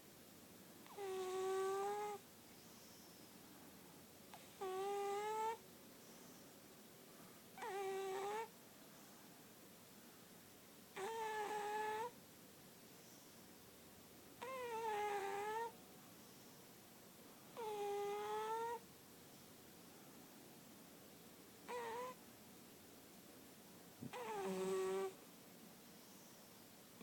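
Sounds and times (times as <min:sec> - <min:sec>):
faint background hiss: 0:00.0 - 0:27.0
cat snoring with whistling tone: 0:00.9 - 0:02.2, 0:04.4 - 0:05.6, 0:07.6 - 0:08.5, 0:11.0 - 0:12.2, 0:14.4 - 0:15.7, 0:17.6 - 0:18.8, 0:21.7 - 0:22.2, 0:24.1 - 0:25.2.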